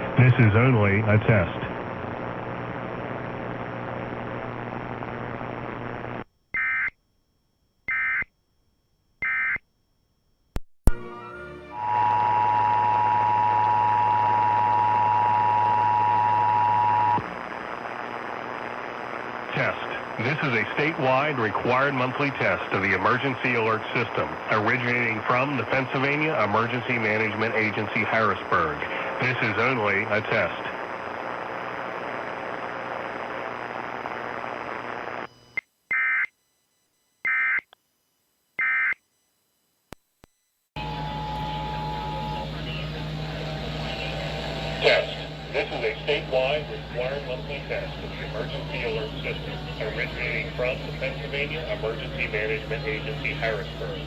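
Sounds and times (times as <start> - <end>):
steady radio hiss: 0.0 - 6.3, 11.8 - 35.3, 40.8 - 54.0.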